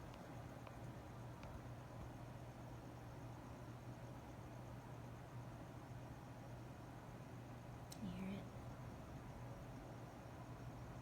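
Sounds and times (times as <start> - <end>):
faint low hum: 0.0 - 11.0.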